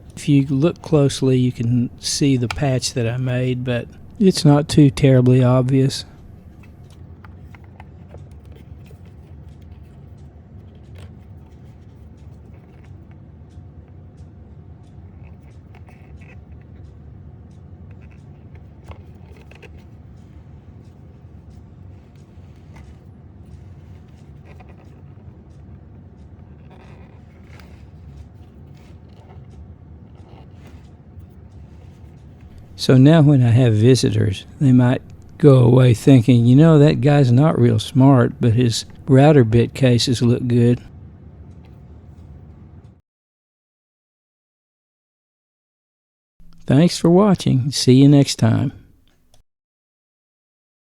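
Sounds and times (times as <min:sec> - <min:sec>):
low background hum: 0:00.0 - 0:43.0, 0:46.4 - 0:49.4
faint clicks and taps: 0:06.0 - 0:32.8.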